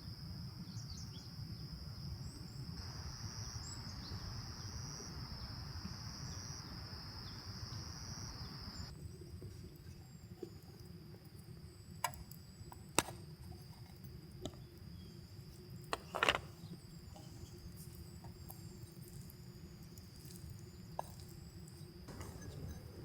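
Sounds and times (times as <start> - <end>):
night insects trilling: 0.0 - 23.0
clattering handling noise: 15.9 - 16.6, 22.1 - 23.0.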